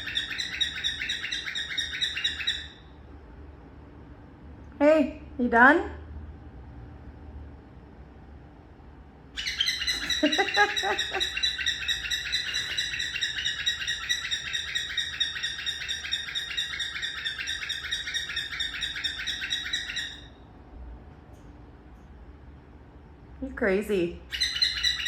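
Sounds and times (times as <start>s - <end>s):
cockatiel chirping: 0.0s - 2.9s, 9.4s - 20.4s, 24.3s - 25.0s.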